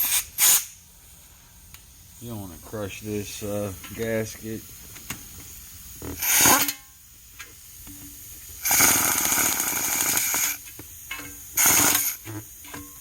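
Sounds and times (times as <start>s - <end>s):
power tool running bolts: 6.0s - 6.8s, 8.6s - 10.8s, 11.5s - 12.5s.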